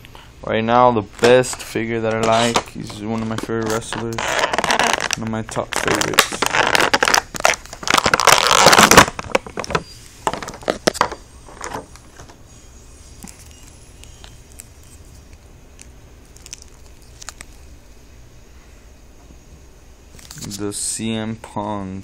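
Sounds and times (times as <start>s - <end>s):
packaging crinkling and rustling: 1.2s - 12.3s, 13.2s - 17.8s.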